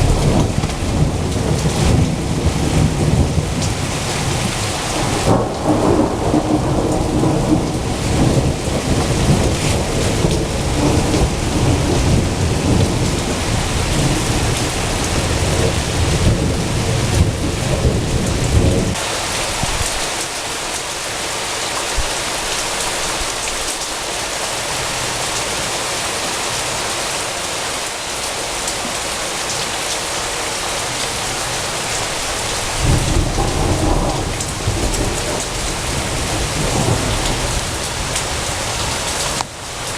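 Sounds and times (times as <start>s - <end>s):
thunder rumbling: 0.0s - 20.0s, 32.4s - 39.5s
heavy rain falling: 0.0s - 39.9s.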